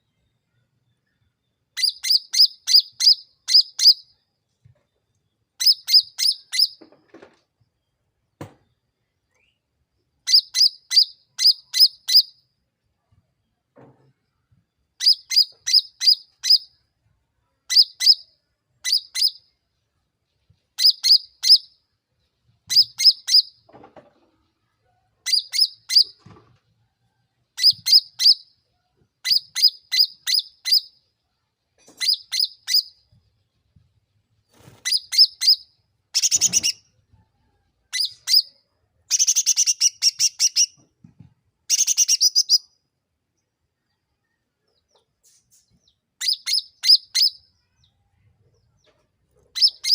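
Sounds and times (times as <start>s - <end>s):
songbird sharp high chirps: 0.8s - 4.2s, 5.6s - 6.8s, 9.3s - 12.4s, 15.0s - 16.8s, 17.7s - 19.6s, 20.8s - 21.8s, 22.7s - 23.6s, 25.2s - 26.2s, 27.6s - 28.6s, 29.2s - 31.0s, 31.9s - 33.1s, 34.6s - 36.9s, 37.9s - 40.8s, 41.7s - 42.8s, 44.8s - 48.0s, 49.6s - 49.9s
songbird buzzy song bursts: 34.5s - 36.9s, 38.0s - 40.8s, 41.7s - 42.8s.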